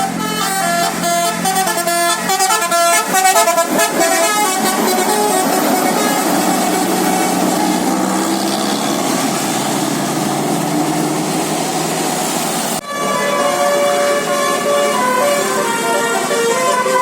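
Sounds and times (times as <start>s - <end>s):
multi-tone bus horn melody: 0.0s - 11.3s, 12.7s - 17.0s
bus engine drone: 0.0s - 17.0s.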